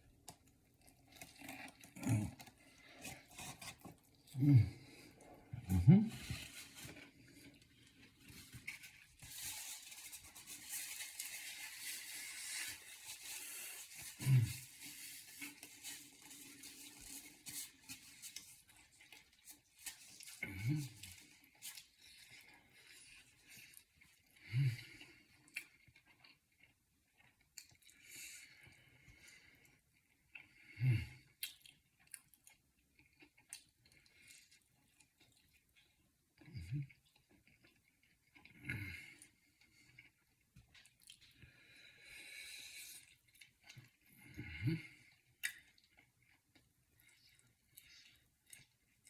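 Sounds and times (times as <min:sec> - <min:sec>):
quiet chewing: 0:00.0 - 0:49.0
crinkly handling noises: 0:06.1 - 0:22.4.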